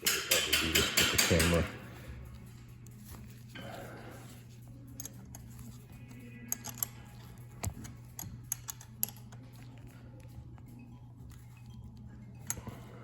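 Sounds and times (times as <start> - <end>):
light metallic clicks and taps: 7.6 - 9.4.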